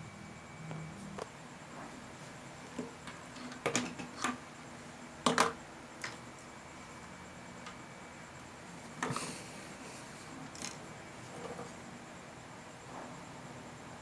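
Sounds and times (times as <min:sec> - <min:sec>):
tools clicking on a workbench: 0:10.5 - 0:10.8.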